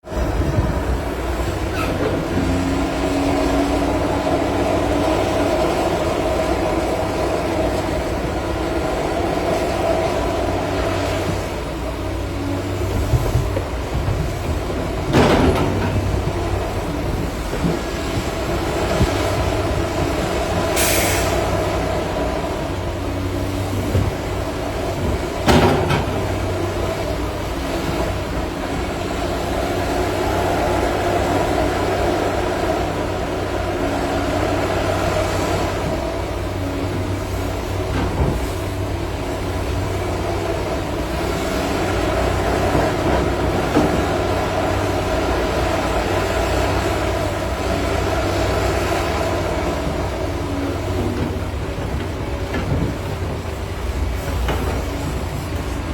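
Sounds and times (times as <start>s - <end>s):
excavator diesel engine running: 0.0s - 55.9s
short hiss: 20.8s - 21.4s.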